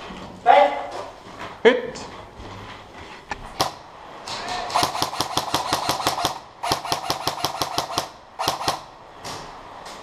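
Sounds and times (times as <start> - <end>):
airsoft gun firing full auto: 4.7 - 8.9.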